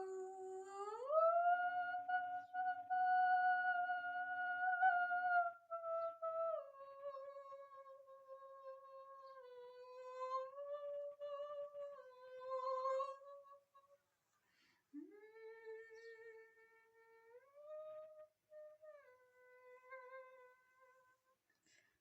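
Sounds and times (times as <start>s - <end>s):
woman softly humming: 0.0s - 4.6s, 14.9s - 21.2s.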